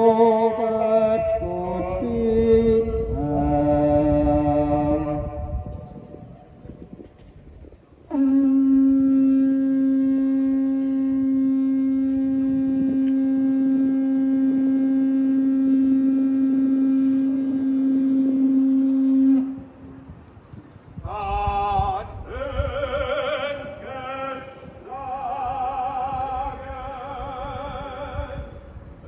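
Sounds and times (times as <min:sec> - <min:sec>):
horn blown in long note: 0:00.0 - 0:06.3, 0:08.0 - 0:20.2.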